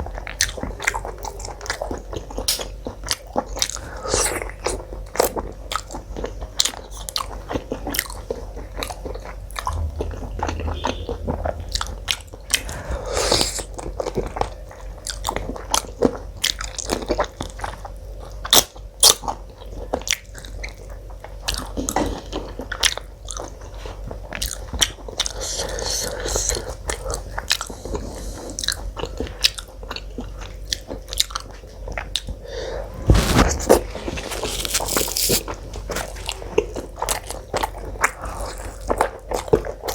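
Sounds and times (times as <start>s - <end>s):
crisp crunches biting salad: 33.1s - 35.5s.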